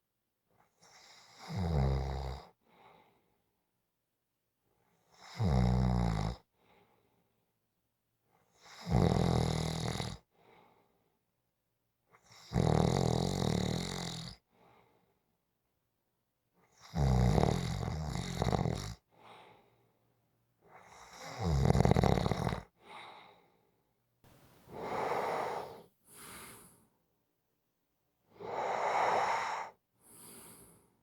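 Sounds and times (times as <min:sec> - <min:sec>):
person snoring inhales: 0:24.6 - 0:26.9, 0:28.4 - 0:30.9
faint exhales: 0:28.5 - 0:30.9.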